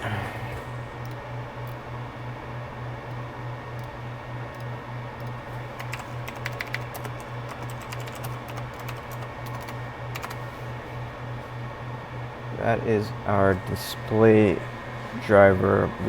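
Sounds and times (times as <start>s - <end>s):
low pulsing hum: 0.0s - 7.3s
computer keyboard typing: 3.1s - 10.4s.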